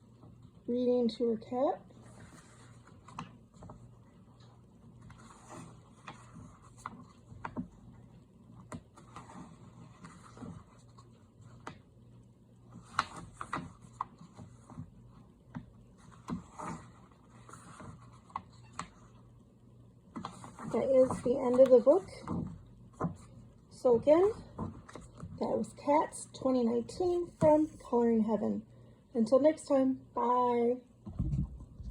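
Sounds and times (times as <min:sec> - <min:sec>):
paper pages rustling: 0:02.0 - 0:11.9, 0:12.7 - 0:19.2, 0:27.1 - 0:27.9.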